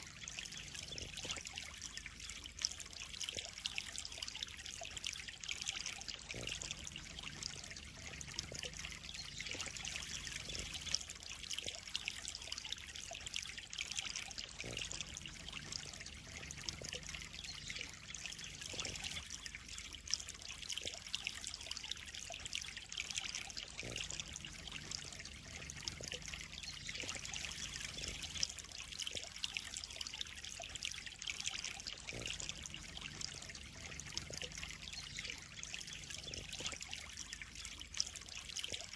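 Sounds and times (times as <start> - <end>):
faint low hum: 0.0 - 30.1
water trickling into a pond: 0.0 - 38.9.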